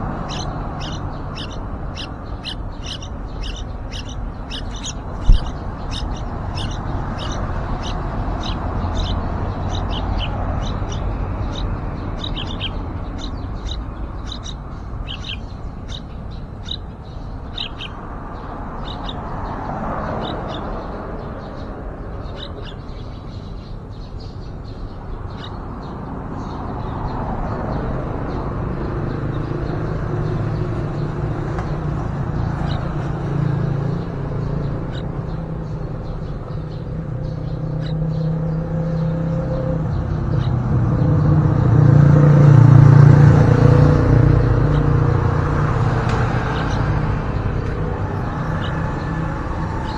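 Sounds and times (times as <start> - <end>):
high bird chirps: 0.0 - 19.5.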